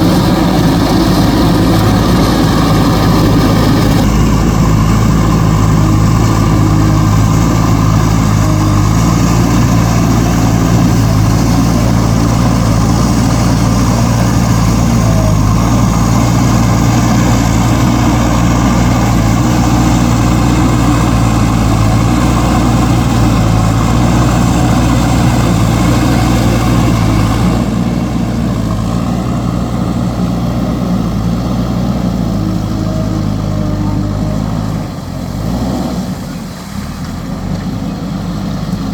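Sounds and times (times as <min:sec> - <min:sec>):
diesel engine running under load: 0:00.0 - 0:38.9.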